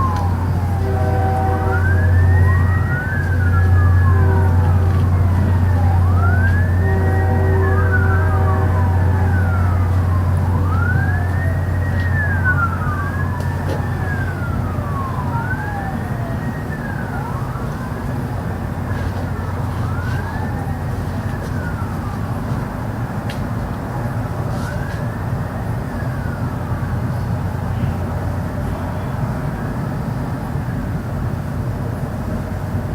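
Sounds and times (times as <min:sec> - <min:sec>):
siren wailing: 0:00.0 - 0:22.8.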